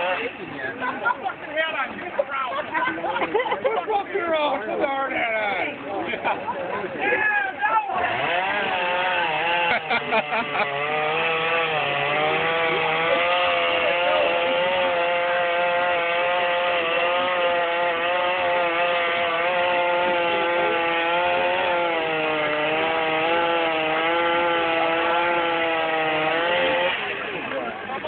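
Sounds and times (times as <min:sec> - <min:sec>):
chainsaw engine at high revs: 0:00.0 - 0:00.6, 0:07.8 - 0:28.0.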